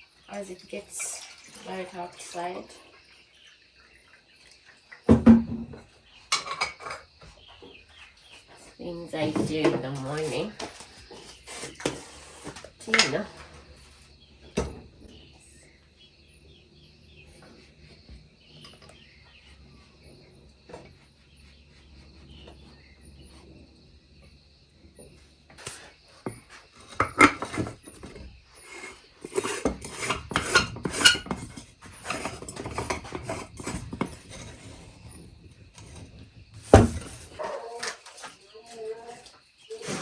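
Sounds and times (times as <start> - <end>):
insects chirring: 0.0 - 40.0
cups and dishes clinking: 6.3 - 7.1, 29.2 - 34.1.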